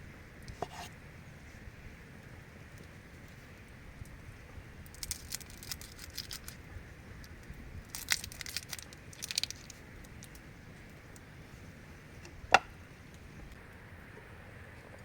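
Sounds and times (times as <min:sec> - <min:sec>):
crackling and crinkling: 0:02.7 - 0:13.6.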